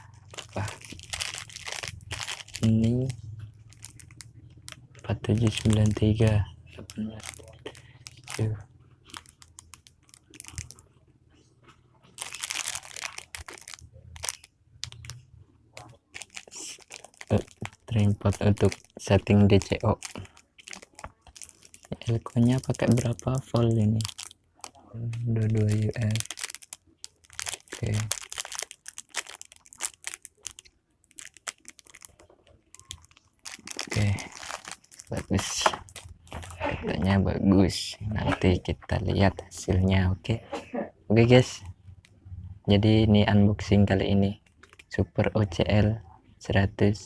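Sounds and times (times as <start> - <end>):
packaging crinkling and clicking: 0.1 - 10.9, 12.0 - 15.2, 15.8 - 36.6, 44.4 - 45.0.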